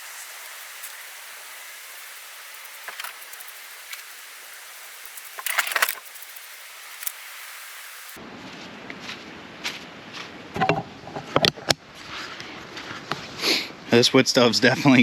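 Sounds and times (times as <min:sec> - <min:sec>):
rain on tent fabric: 0:00.0 - 0:08.2
gear clattering: 0:05.0 - 0:07.2.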